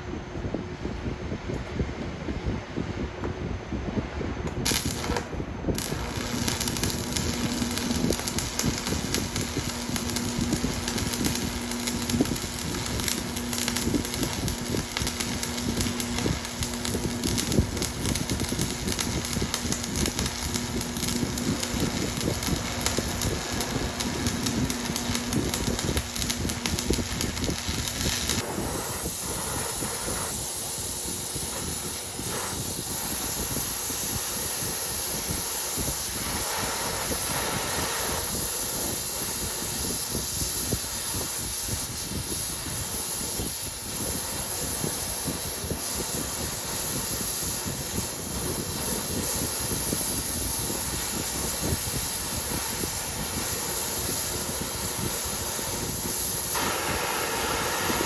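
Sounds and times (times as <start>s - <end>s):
faint hum: 0.0s - 33.6s
welding arc crackling: 4.5s - 58.0s
thin high whine: 4.7s - 58.0s.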